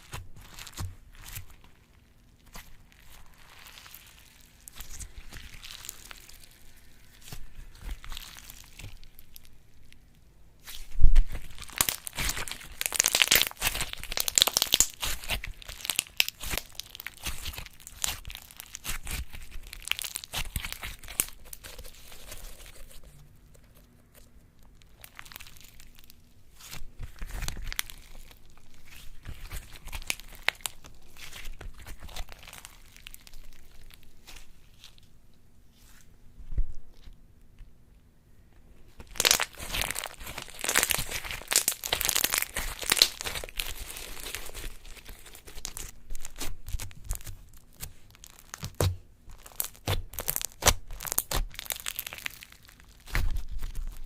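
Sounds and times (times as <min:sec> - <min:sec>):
slime crackling and clicking: 0:11.3 - 0:34.4, 0:39.0 - 0:54.0.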